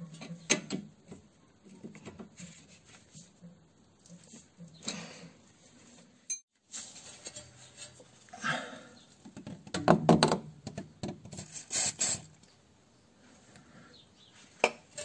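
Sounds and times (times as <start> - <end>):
sharp clicks and knocks: 9.2 - 11.4.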